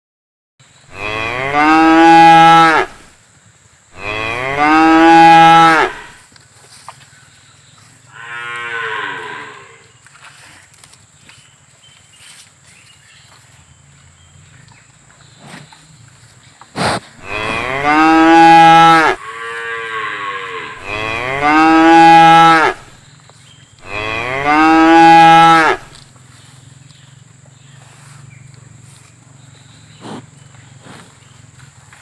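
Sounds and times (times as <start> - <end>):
cow mooing: 0.9 - 3.0, 4.0 - 6.2, 8.1 - 9.9, 17.2 - 23.0, 23.8 - 25.9.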